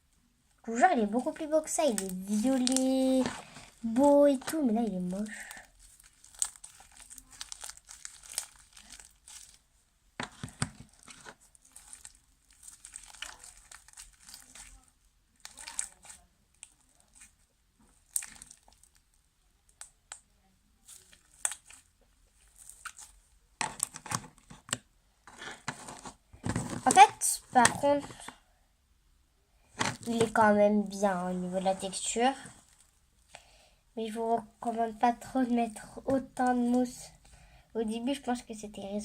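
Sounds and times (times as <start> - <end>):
slime stretched and squished by hand: 1.1 - 24.4.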